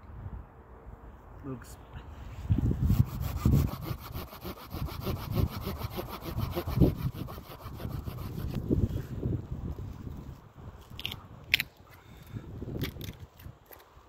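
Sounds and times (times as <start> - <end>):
saw cutting through branch: 2.8 - 8.7.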